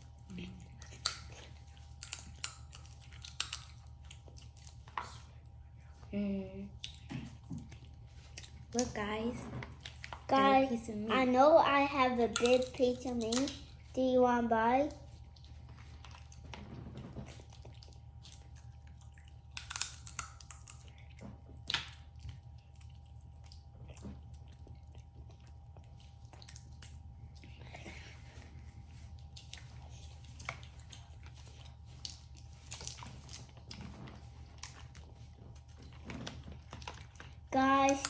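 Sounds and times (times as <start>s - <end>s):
chewing: 0.0s - 6.1s, 6.7s - 10.3s, 14.9s - 38.0s
steady low hum: 0.0s - 38.0s
crab shell cracking: 2.0s - 3.9s, 19.5s - 20.9s.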